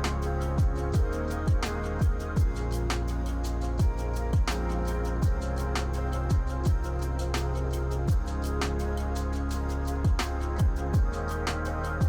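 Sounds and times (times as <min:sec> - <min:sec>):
electronic beat: 0:00.0 - 0:07.0, 0:08.1 - 0:08.6, 0:10.0 - 0:12.0.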